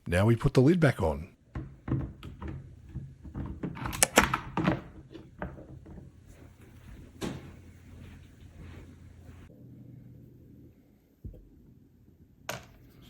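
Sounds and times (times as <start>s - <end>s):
plastic keyboard case clicks and knocks: 1.6s - 6.0s.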